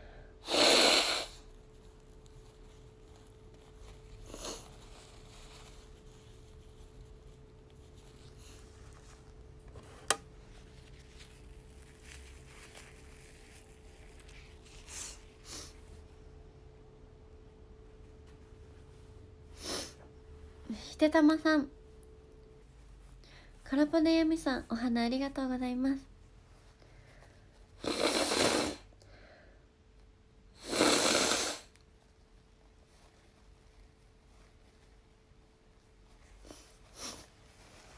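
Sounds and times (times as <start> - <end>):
soft nose sniffs: 0.0 - 1.6, 3.8 - 6.2, 13.2 - 16.1, 19.5 - 20.1, 26.9 - 28.9, 30.6 - 31.8, 36.2 - 37.9
faint steady hum: 0.0 - 37.9.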